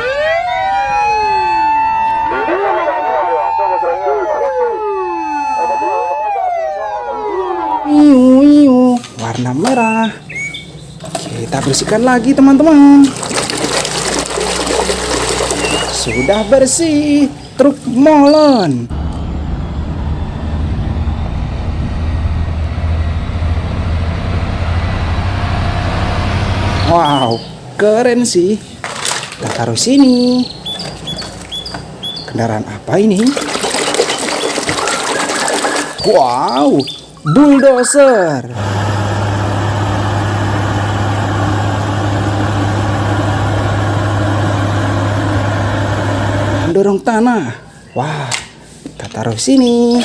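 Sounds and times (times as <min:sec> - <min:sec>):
truck engine rumbling: 0:06.1 - 0:46.8
heavy engine idling: 0:18.9 - 0:26.8, 0:38.5 - 0:46.7.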